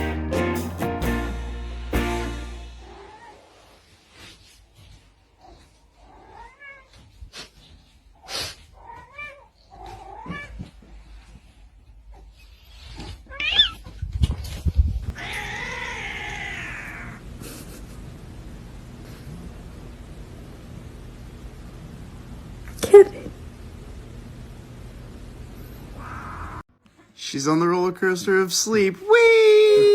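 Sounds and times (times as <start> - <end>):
cat meowing: 15.1 - 17.2.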